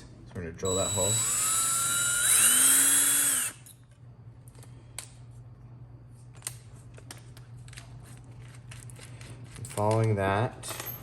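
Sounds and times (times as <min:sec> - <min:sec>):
electric drill motor whine: 0:00.6 - 0:03.7.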